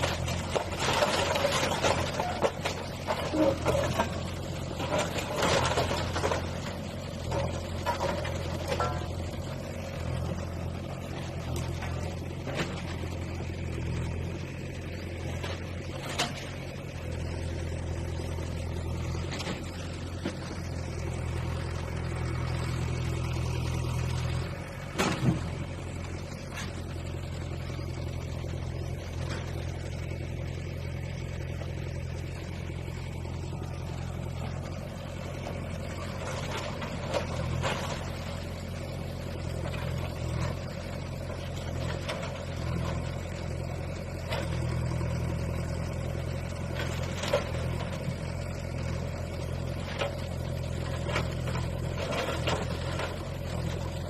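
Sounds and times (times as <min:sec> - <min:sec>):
bulldozer engine running: 0:00.0 - 0:54.0.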